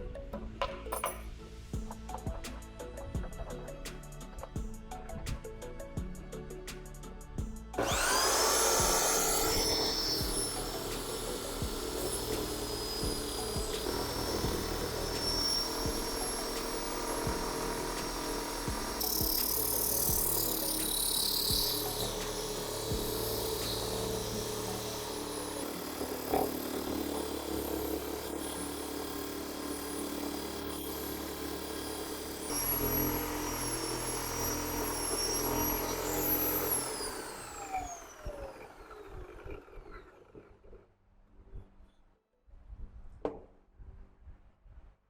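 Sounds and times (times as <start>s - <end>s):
power tool motor whining: 7.8s - 40.8s.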